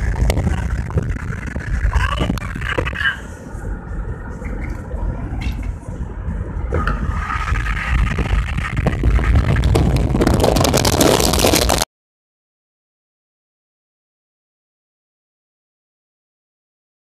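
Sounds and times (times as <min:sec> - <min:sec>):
loud low rumbling with crackle: 0:00.0 - 0:11.9.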